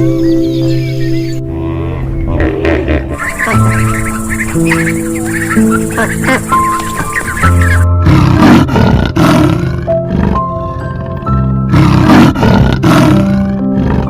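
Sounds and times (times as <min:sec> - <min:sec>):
lion roaring: 0:08.0 - 0:14.0.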